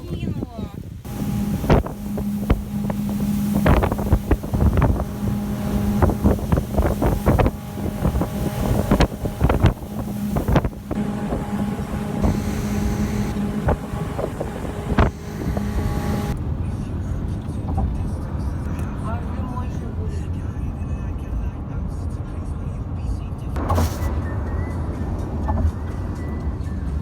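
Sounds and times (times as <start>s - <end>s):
wind buffeting microphone: 0.0s - 18.1s
motorboat engine humming: 0.8s - 21.0s, 23.4s - 27.0s.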